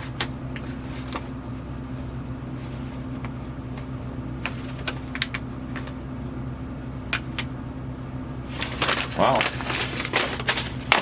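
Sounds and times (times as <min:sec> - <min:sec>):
steady low hum: 0:00.0 - 0:11.0
packaging clicks and rustles: 0:03.1 - 0:06.0, 0:08.5 - 0:11.0.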